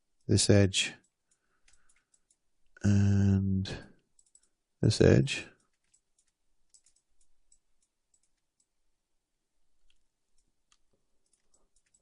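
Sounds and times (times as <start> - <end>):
faint computer mouse clicks: 4.2 - 4.5.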